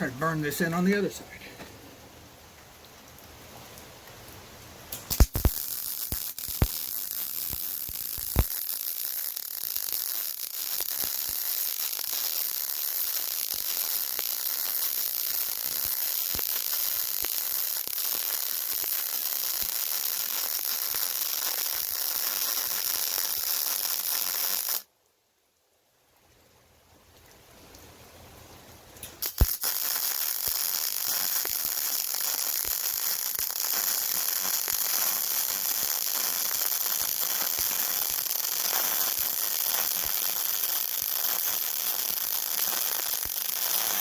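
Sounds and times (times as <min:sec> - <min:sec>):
sharp pops of arc striking: 0:04.9 - 0:09.2, 0:29.2 - 0:36.0
welding arc crackling sizzle: 0:04.9 - 0:24.8, 0:29.2 - 0:44.0.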